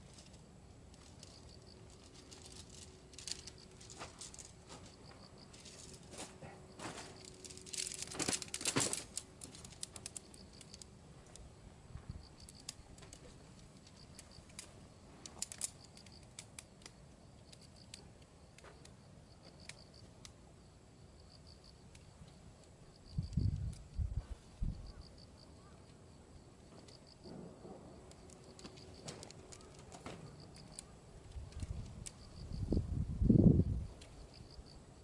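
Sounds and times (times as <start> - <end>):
gear crinkling and clicking: 0.0 - 11.4, 12.3 - 18.0, 28.0 - 32.5.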